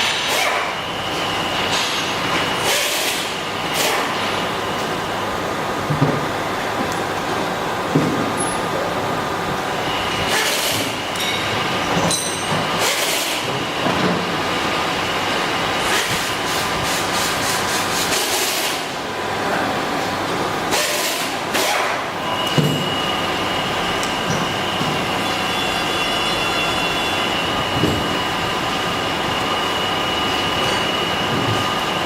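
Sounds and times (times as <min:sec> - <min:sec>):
high whine: 0:22.2 - 0:32.0.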